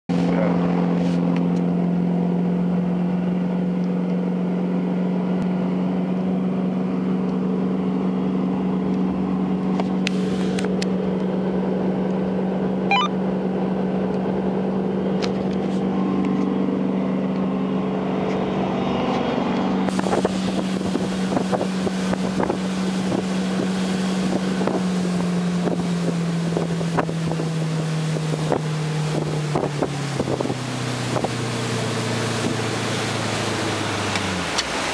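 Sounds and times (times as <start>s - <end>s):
boat engine running: 0.1s - 34.9s
wind on microphone: 19.9s - 24.9s.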